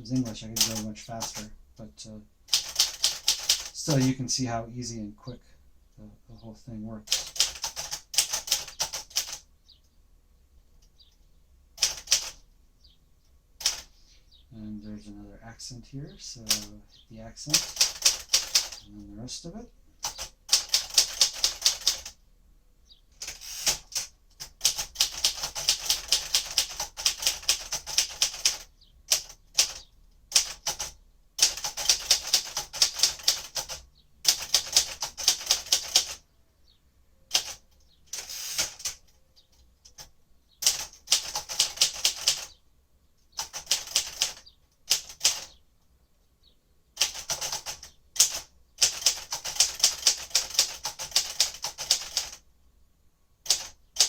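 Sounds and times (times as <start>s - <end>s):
typewriter keystroke clacks: 0.2s - 1.4s, 2.5s - 4.1s, 7.1s - 9.4s, 11.8s - 12.4s, 17.5s - 18.8s, 20.0s - 22.1s, 23.2s - 36.2s, 39.8s - 42.5s, 43.4s - 45.5s, 47.0s - 52.4s, 53.4s - 54.0s.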